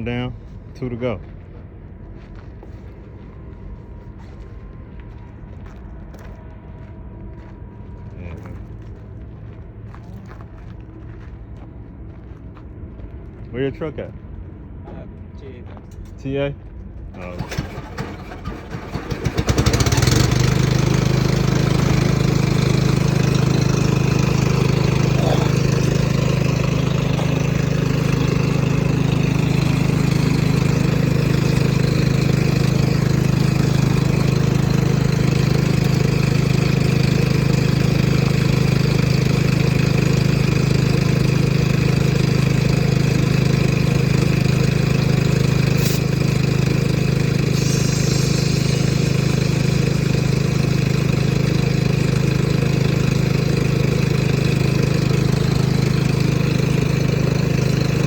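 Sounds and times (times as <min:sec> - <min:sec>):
engine running steadily: 0:00.0 - 0:58.0.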